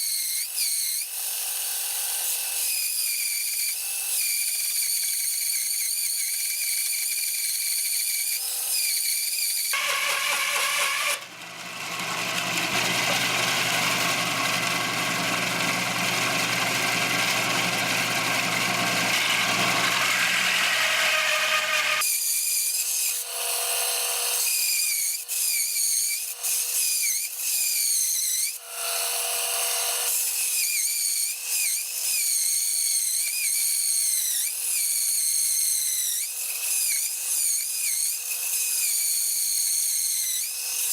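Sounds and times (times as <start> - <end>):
band saw whining: 8.7 - 23.2.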